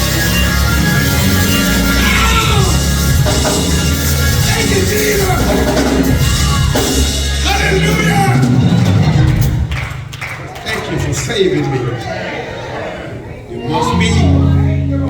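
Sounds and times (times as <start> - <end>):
live band with drums and guitar: 0.0 - 10.2
person singing: 1.5 - 3.1.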